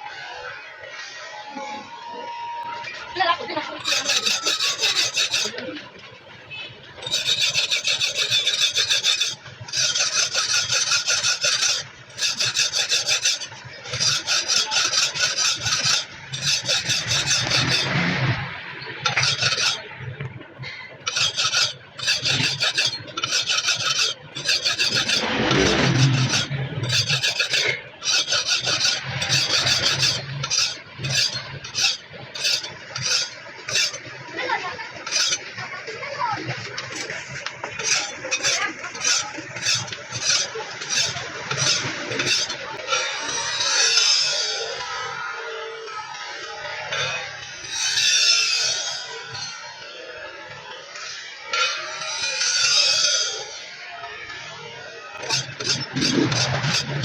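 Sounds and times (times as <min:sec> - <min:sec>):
metal rasping on cleaver blade: 0:03.8 - 0:05.7, 0:07.0 - 0:19.9, 0:21.1 - 0:34.1, 0:35.0 - 0:35.4, 0:36.9 - 0:44.5, 0:55.2 - 0:57.0.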